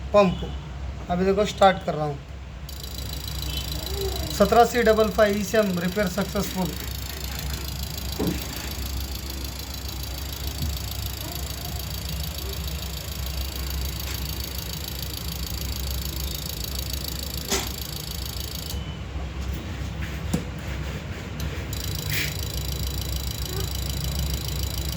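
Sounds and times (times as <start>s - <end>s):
sharp clicks: 2.7s - 18.8s
engine idling: 2.7s - 19.2s, 21.6s - 24.9s.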